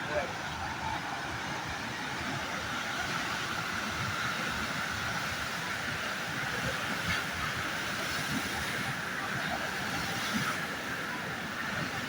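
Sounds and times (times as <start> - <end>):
water surging upriver: 0.0 - 12.0.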